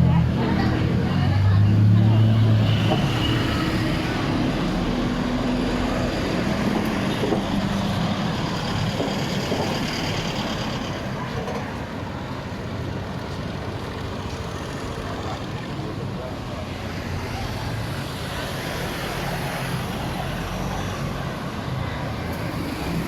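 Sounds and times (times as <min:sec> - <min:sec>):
vehicles passing on street: 0:00.0 - 0:23.0.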